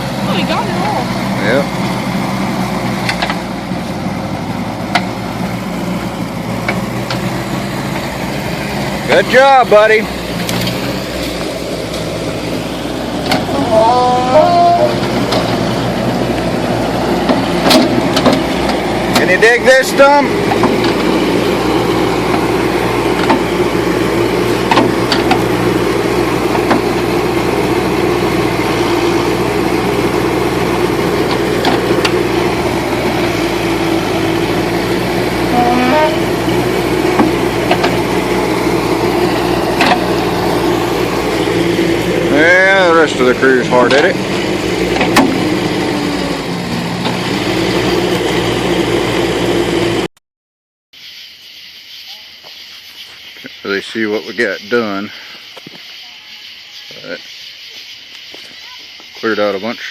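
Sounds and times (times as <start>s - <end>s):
backhoe engine running: 0.0s - 50.1s
sharp knocks and clanks: 17.2s - 19.4s, 20.4s - 21.1s, 23.1s - 23.6s, 24.6s - 25.5s, 26.5s - 27.0s, 37.1s - 38.0s, 39.8s - 40.1s, 44.9s - 45.6s.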